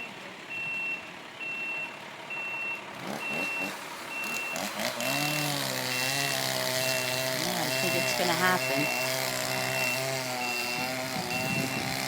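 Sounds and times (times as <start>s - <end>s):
reversing alarm beeping: 0.5s - 4.7s, 5.8s - 12.0s
engine speeding up: 2.9s - 12.0s.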